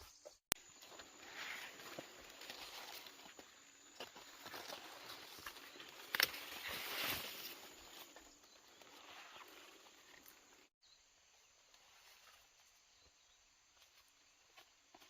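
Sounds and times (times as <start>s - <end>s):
faint outdoor background hiss: 7.2s - 15.0s.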